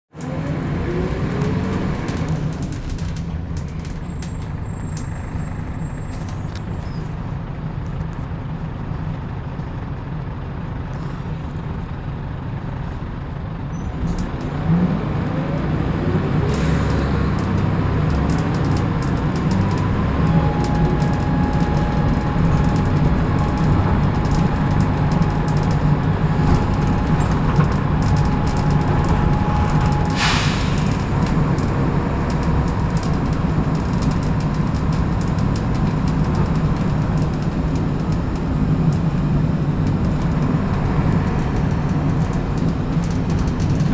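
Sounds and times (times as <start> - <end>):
bus engine running: 0.1 - 43.9
steady whistle: 20.2 - 31.1
air release hiss: 30.1 - 31.2.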